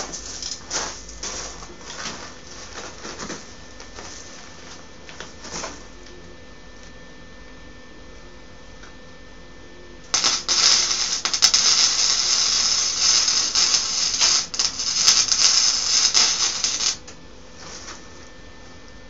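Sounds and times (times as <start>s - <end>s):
arc welding crackle: 10.1s - 18.0s.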